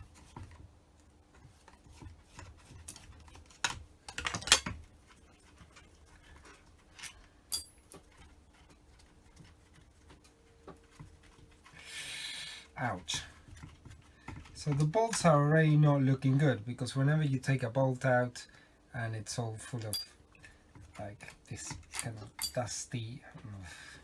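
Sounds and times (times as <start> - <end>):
sharp ringing metal clink: 7.5 - 7.8, 19.9 - 20.1, 22.4 - 22.7
metallic clicks of bolts: 19.9 - 20.1, 21.9 - 22.7.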